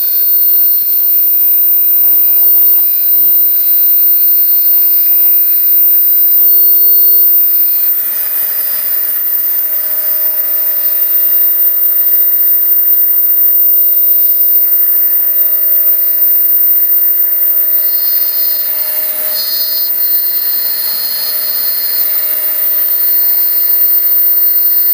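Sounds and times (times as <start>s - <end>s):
cutting machine whining: 7.9s - 10.3s, 18.0s - 23.0s.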